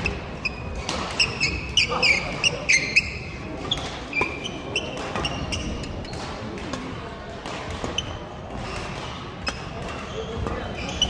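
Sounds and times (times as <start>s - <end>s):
sports shoes squeaking on court: 0.0s - 6.4s, 7.8s - 11.0s
racket hitting shuttlecock: 0.4s - 11.0s.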